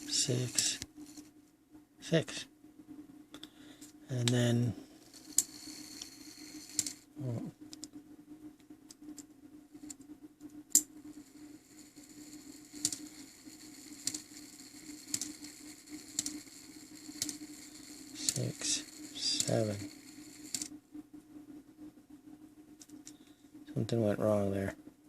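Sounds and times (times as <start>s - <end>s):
clock movement clicks: 14.0s - 16.4s, 18.2s - 20.7s.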